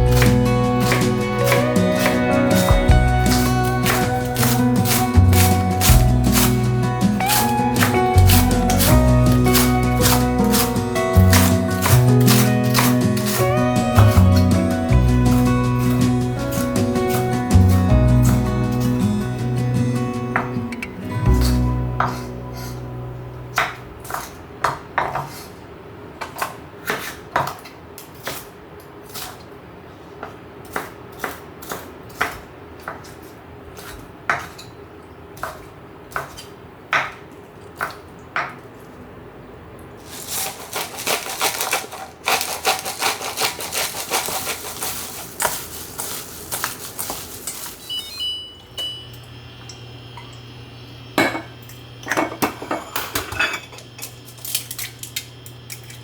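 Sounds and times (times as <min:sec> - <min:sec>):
utensils clinking against dishes: 0:00.0 - 0:22.9, 0:40.0 - 0:49.8, 0:51.2 - 0:56.0.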